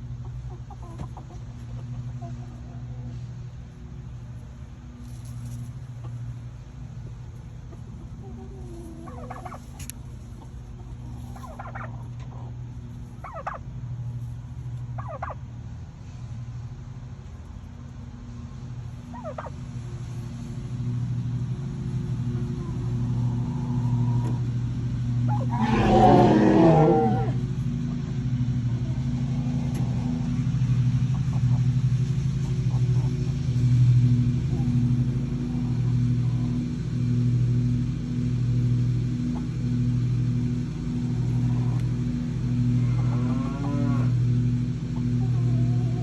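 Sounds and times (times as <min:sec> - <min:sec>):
steady low hum: 0:00.0 - 0:46.0
turkeys gobbling: 0:00.2 - 0:03.1, 0:07.7 - 0:13.7, 0:14.9 - 0:15.4, 0:19.1 - 0:19.6, 0:22.4 - 0:24.5, 0:25.3 - 0:27.4, 0:41.0 - 0:42.0, 0:42.6 - 0:46.0
turkey calling: 0:08.2 - 0:09.9, 0:11.0 - 0:12.5, 0:13.2 - 0:13.7, 0:15.0 - 0:15.4, 0:19.1 - 0:19.5, 0:25.3 - 0:27.4, 0:45.0 - 0:46.0.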